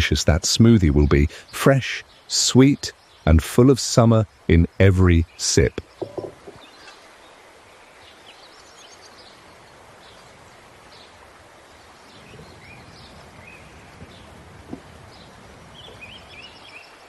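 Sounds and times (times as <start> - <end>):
steady background hiss: 0.0 - 17.0
small birds chirping: 0.6 - 17.0
soft knock: 6.0 - 6.6.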